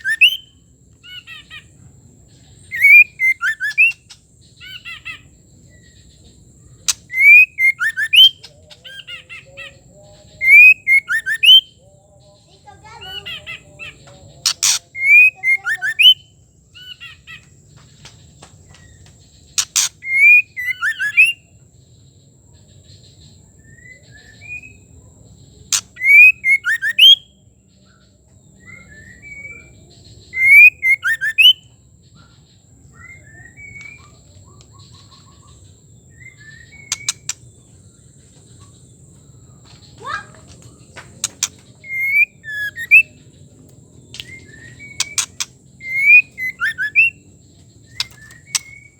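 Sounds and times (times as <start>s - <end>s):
bird whistling call with clicks: 14.5s - 16.2s, 18.0s - 21.3s, 33.6s - 35.2s, 36.6s - 37.4s, 40.5s - 43.1s, 44.1s - 47.1s, 47.9s - 48.9s.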